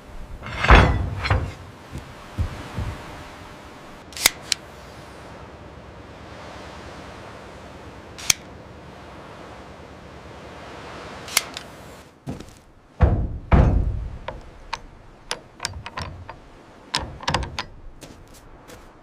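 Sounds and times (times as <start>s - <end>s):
steady background hiss: 0.0s - 19.0s.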